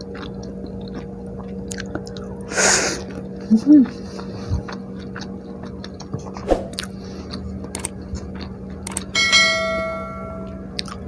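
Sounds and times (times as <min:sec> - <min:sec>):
chewing food: 0:00.0 - 0:09.2, 0:10.6 - 0:11.0
low hum: 0:06.2 - 0:07.1, 0:08.8 - 0:11.0
sharp ringing clink: 0:09.2 - 0:10.7.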